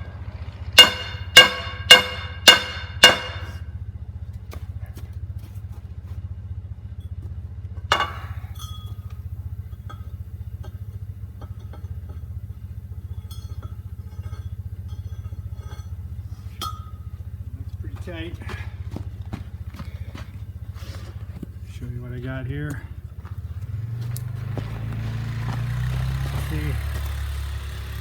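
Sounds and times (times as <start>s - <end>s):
steady low hum: 0.0s - 28.0s
hammer strikes on metal: 0.8s - 3.6s, 7.9s - 8.5s.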